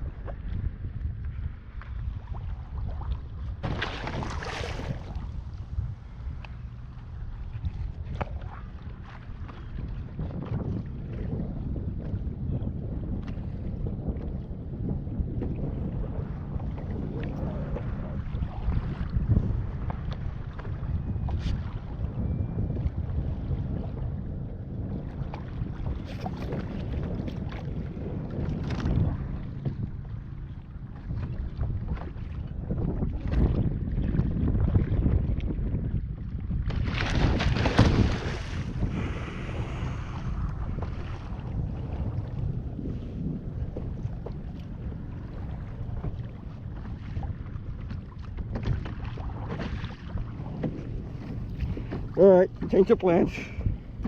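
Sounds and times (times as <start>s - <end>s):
water lapping against kayak: 0.0s - 54.0s
wind buffeting microphone: 0.0s - 54.0s
small knocks and splashes: 3.6s - 5.2s, 36.6s - 38.7s.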